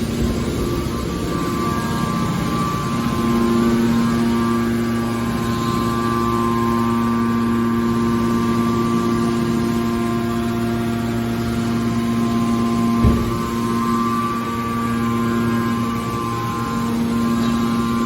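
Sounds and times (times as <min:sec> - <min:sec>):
baler motor humming: 0:00.0 - 0:18.0
short knock: 0:13.0 - 0:13.5.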